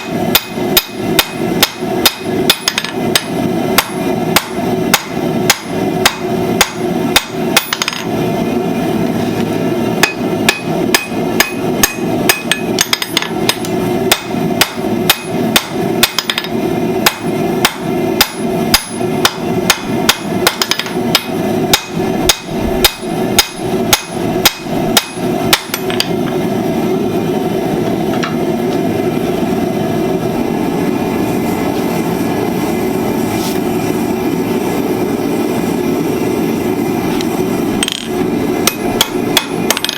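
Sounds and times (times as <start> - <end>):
hammer striking steel on anvil: 0.0 - 8.2, 10.0 - 26.2, 37.8 - 39.9.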